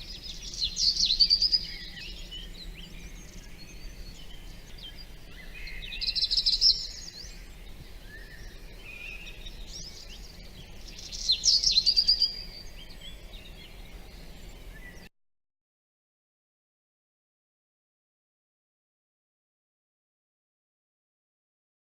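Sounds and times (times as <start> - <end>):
bursts of rapid bird song: 0.0 - 15.1
songbirds singing: 0.0 - 15.1.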